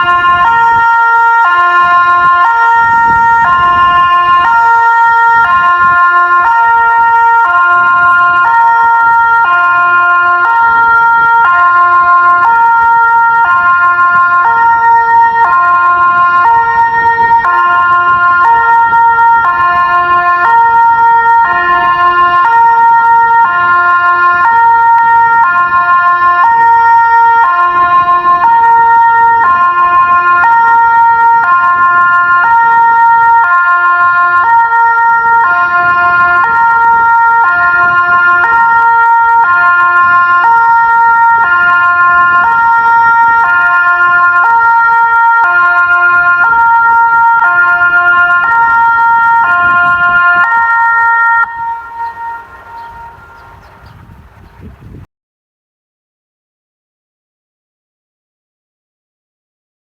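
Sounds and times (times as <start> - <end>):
two-tone siren: 0.0 - 55.1.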